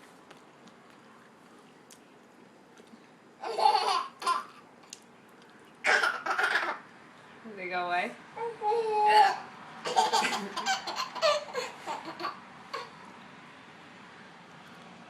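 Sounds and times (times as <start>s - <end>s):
baby laughing: 3.4s - 4.6s, 5.8s - 6.8s, 8.7s - 13.0s.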